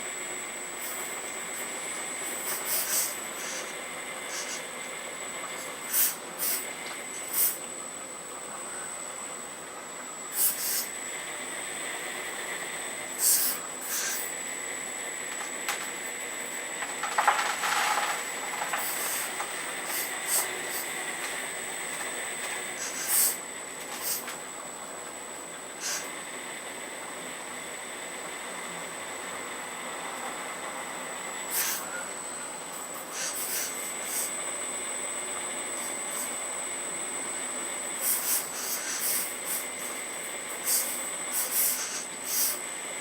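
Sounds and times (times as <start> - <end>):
hydraulic pump whine: 0.0 - 43.0
hissing bursts: 0.8 - 4.7, 5.6 - 7.6, 10.3 - 10.9, 13.2 - 14.3, 18.7 - 21.0, 22.7 - 23.4, 24.0 - 24.3, 25.8 - 26.1, 31.5 - 31.9, 32.8 - 34.4, 38.0 - 42.6.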